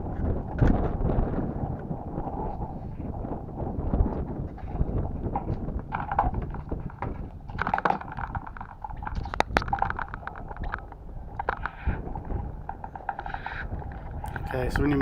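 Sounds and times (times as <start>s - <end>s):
wind on microphone: 0.0s - 15.0s.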